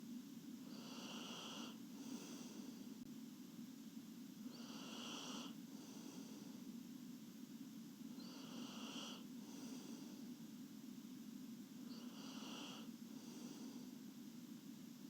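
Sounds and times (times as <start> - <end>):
steady low hum: 0.0 - 15.0
soft snoring breaths: 0.6 - 3.0, 4.4 - 6.7, 8.1 - 10.4, 11.8 - 14.2.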